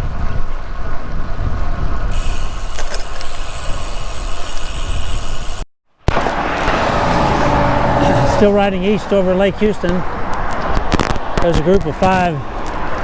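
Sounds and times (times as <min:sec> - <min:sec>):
wind rumbling on microphone: 0:00.0 - 0:02.7
road traffic hiss: 0:02.1 - 0:05.6, 0:06.2 - 0:10.8.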